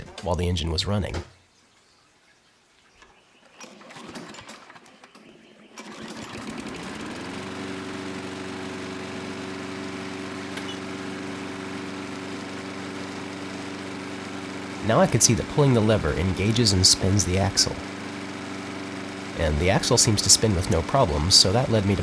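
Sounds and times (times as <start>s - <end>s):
lawn mower engine running: 3.5s - 22.0s
clicking and rattling: 3.6s - 6.4s.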